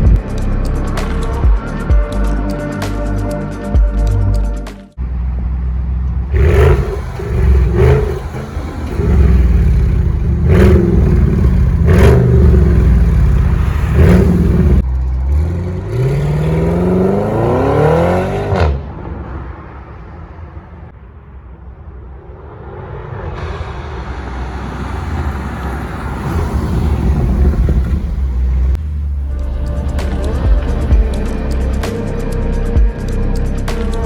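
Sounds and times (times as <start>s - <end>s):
car engine revving: 5.0s - 19.5s, 22.4s - 31.9s.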